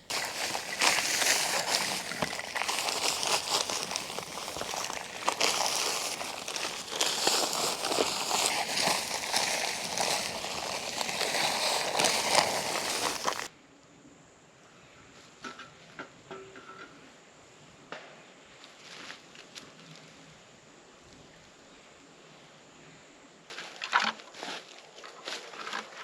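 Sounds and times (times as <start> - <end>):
dry concrete mix pouring: 0.0 - 13.5.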